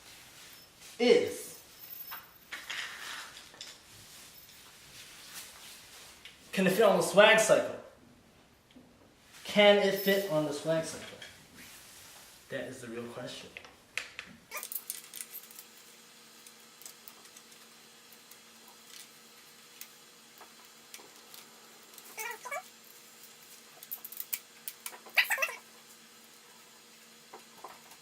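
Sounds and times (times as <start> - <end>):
short animal cries: 25.1 - 25.6.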